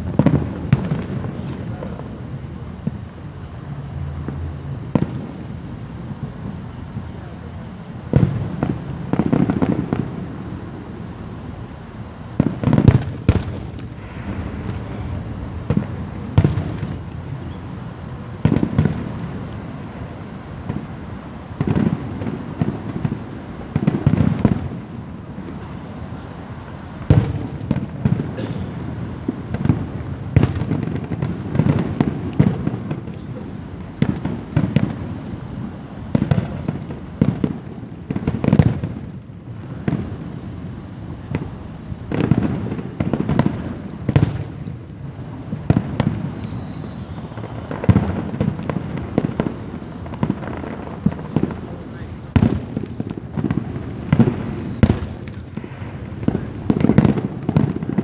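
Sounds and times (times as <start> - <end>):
fireworks booming: 0.0 - 58.0.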